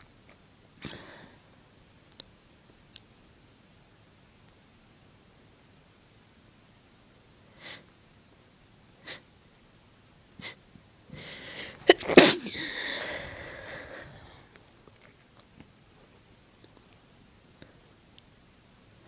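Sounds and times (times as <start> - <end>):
short sharp breaths: 11.1 - 11.9, 12.5 - 14.6
person sneezing loudly: 11.8 - 13.4.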